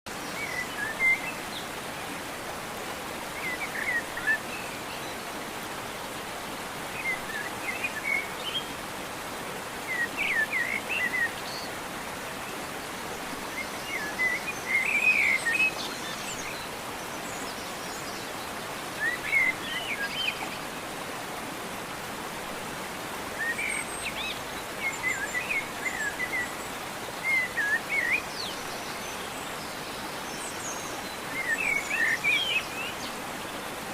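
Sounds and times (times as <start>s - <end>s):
steady background hiss: 0.1s - 33.9s
small birds chirping: 23.1s - 33.9s.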